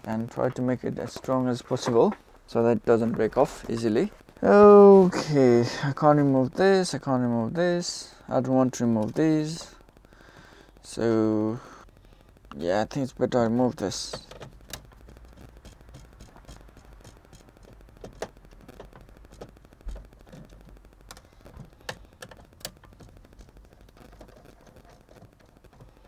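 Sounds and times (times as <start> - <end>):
low steady hum: 0.0 - 26.0
small parts and tools clicking: 8.2 - 26.0.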